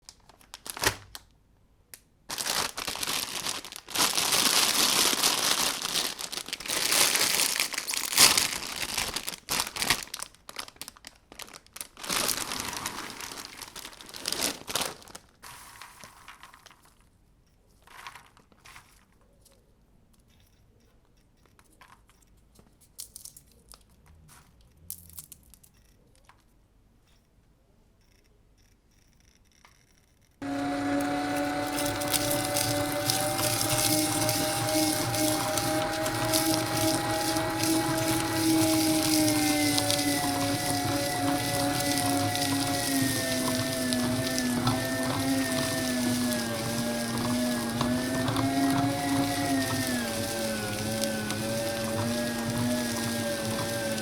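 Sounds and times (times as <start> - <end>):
popcorn crunching in grinder: 2.3 - 17.1, 30.4 - 54.0.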